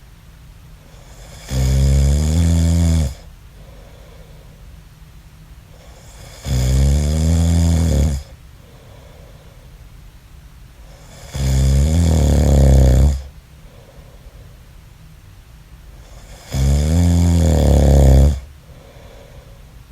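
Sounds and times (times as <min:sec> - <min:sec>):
man snoring: 0:01.0 - 0:03.3, 0:05.8 - 0:08.3, 0:10.9 - 0:13.3, 0:16.0 - 0:19.3.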